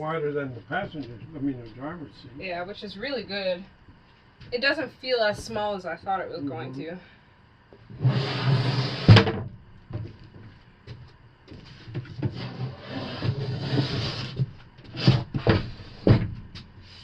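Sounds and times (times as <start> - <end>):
wooden boxes scraping: 7.8 - 10.4, 11.5 - 16.3.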